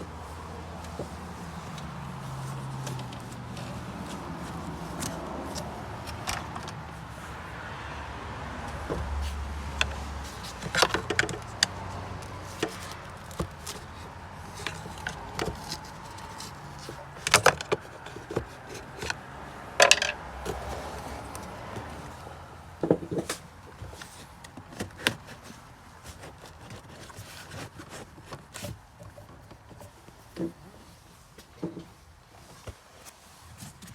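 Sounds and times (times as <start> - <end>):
hand tools clinking on metal: 19.8 - 20.2.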